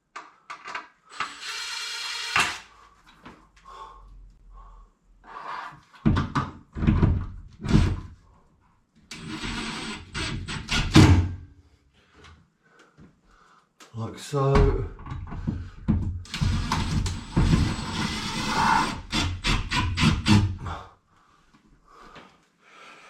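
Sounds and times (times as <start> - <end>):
power driver whirring: 16.3 - 20.4.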